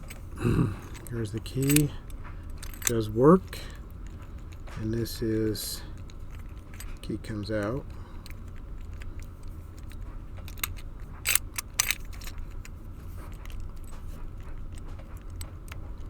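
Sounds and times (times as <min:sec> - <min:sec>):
key clicking and rattling in padlock: 0:00.0 - 0:16.0.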